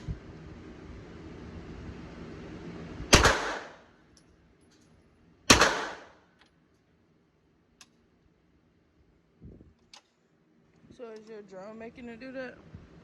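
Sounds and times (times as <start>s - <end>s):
gunshots: 3.1s - 3.8s, 5.5s - 6.2s.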